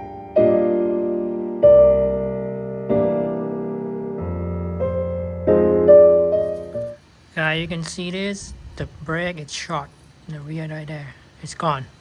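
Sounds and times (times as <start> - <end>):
soft electric piano chords: 0.0 - 7.1.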